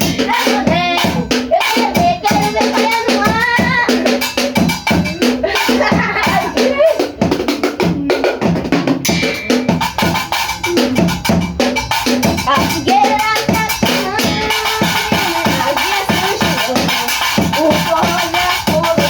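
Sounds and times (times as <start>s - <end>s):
drum kit beating: 0.0s - 19.0s
band music: 4.8s - 18.9s.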